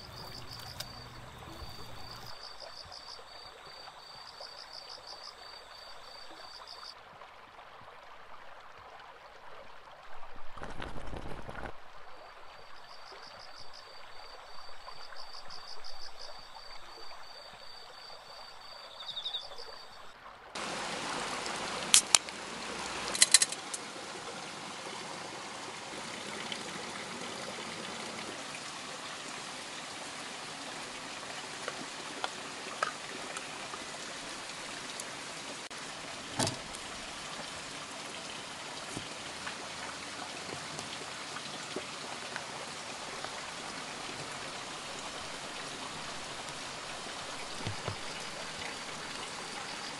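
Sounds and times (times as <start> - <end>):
insects chirping: 0.0 - 7.0, 12.1 - 24.8, 43.2 - 49.9
mountain stream running: 0.0 - 49.9.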